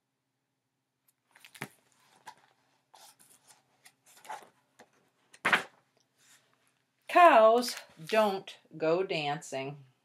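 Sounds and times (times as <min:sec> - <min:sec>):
page flip: 0:01.1 - 0:06.4
paper pages rustling: 0:01.2 - 0:06.8.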